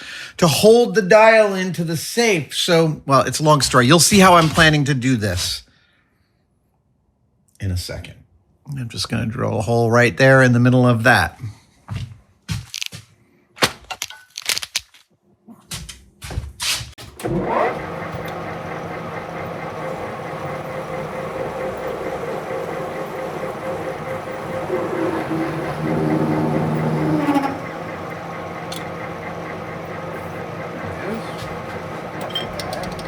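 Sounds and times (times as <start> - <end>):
machine tool spindle motor whine: 17.1 - 33.0
drill bit cutting steel: 17.2 - 30.8.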